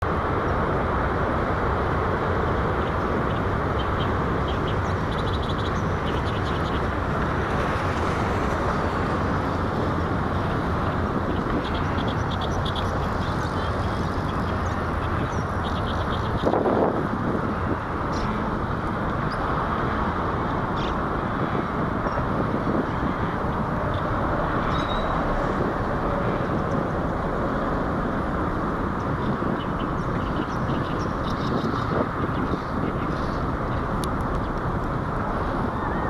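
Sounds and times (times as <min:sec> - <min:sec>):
steady rushing background noise: 0:00.0 - 0:36.0
small birds chirping: 0:02.7 - 0:07.0, 0:10.4 - 0:16.6.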